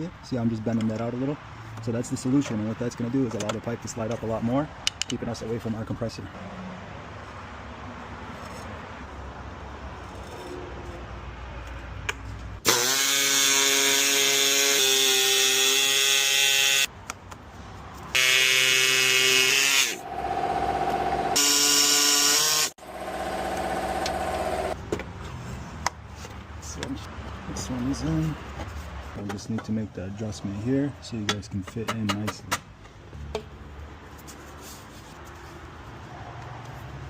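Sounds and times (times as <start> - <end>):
power drill whining: 12.6 - 16.9, 18.2 - 24.8.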